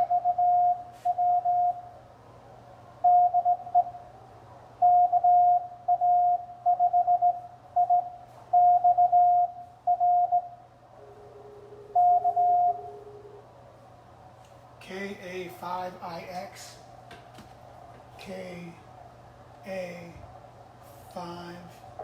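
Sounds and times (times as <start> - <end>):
morse code tone: 0.0 - 1.9, 3.0 - 4.0, 4.8 - 10.6, 11.8 - 13.4
faint lower morse signal: 0.0 - 2.0, 3.0 - 4.2, 4.8 - 14.1.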